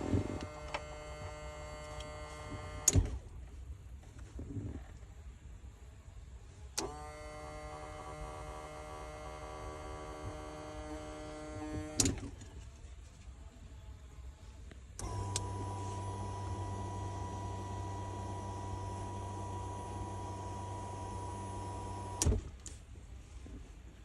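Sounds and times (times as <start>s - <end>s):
fuel pump whining: 0.0s - 3.2s, 6.8s - 12.3s, 15.0s - 22.7s
low steady hum: 0.0s - 24.0s.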